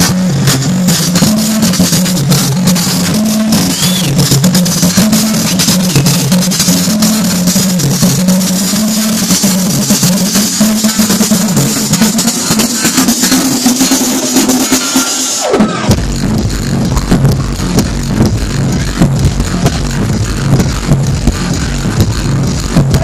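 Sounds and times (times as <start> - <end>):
falling pitch sweep: 0.0 - 7.4, 12.8 - 20.7
dance music with fast drum beat: 0.0 - 23.0
deep bass: 0.0 - 23.0.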